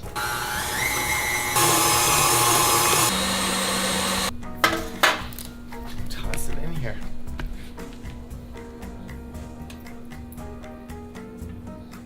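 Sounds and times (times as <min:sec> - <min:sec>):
electric mixer whirring: 0:00.0 - 0:04.3.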